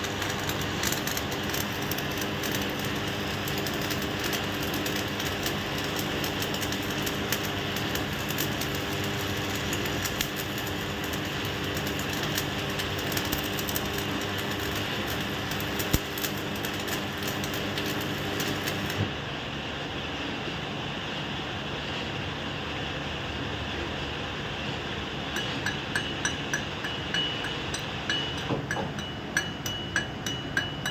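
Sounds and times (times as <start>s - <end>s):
arc welding crackling sizzle: 0.0s - 19.2s
steady background noise: 0.0s - 30.9s.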